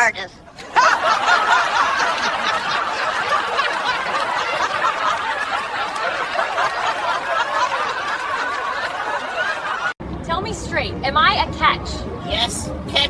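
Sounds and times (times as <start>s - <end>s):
people laughing: 0.6s - 10.0s.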